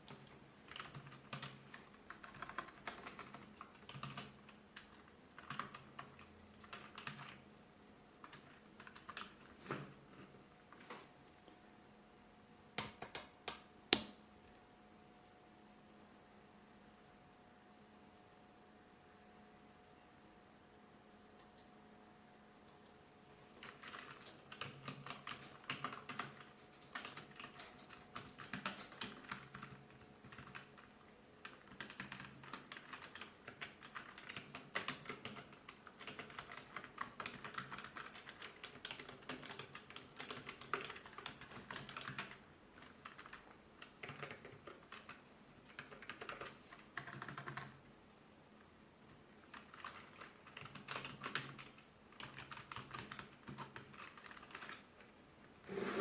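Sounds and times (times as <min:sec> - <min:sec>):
keyboard typing: 0:00.0 - 0:07.4, 0:08.2 - 0:10.0, 0:12.8 - 0:14.2, 0:23.6 - 0:48.2, 0:49.4 - 0:55.1.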